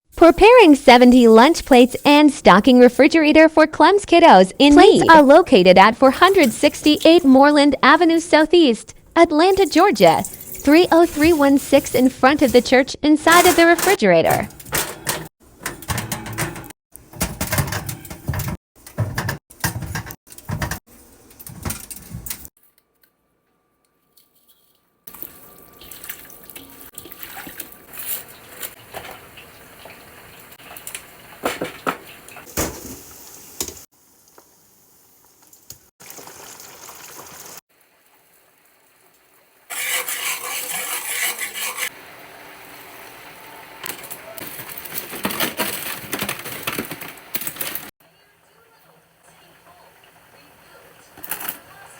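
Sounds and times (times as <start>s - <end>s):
running water: 9.4s - 12.8s, 25.1s - 31.3s
dishes and pans being handled: 13.3s - 20.8s.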